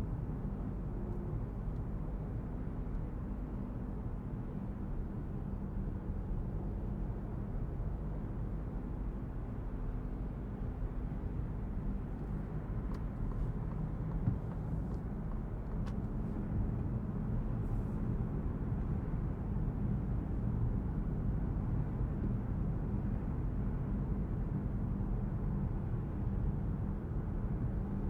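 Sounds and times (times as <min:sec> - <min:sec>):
car engine rumble: 0:00.0 - 0:28.0
tyre road noise: 0:12.0 - 0:18.4.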